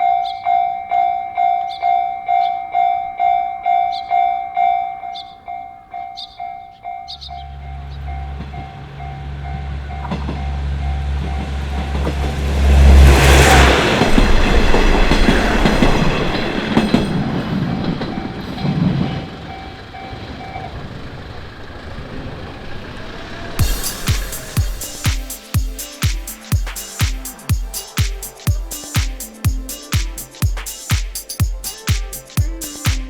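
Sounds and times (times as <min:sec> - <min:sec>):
level crossing bell dinging: 0:00.0 - 0:09.2
electric train passing: 0:00.0 - 0:33.0.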